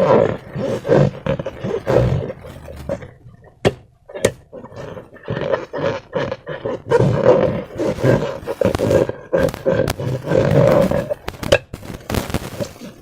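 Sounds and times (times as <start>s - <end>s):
wet rubbery squelching: 0.0s - 5.0s, 6.3s - 13.0s
sharp clicks: 8.6s - 12.8s.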